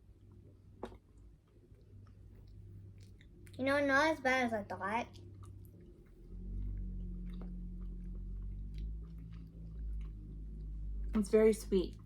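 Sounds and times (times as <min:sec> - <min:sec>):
low steady hum: 0:00.0 - 0:12.0
person chewing cake: 0:00.2 - 0:03.6, 0:05.0 - 0:11.2.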